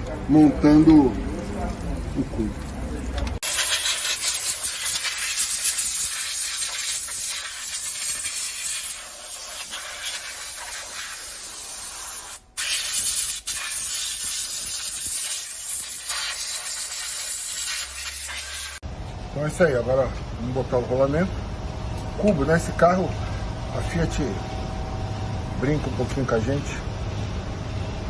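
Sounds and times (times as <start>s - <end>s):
high-pressure water jet hissing: 3.4s - 18.8s.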